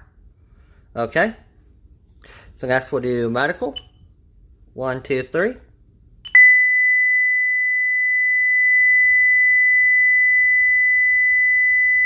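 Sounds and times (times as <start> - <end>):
high-pitched alarm tone: 6.3 - 12.0.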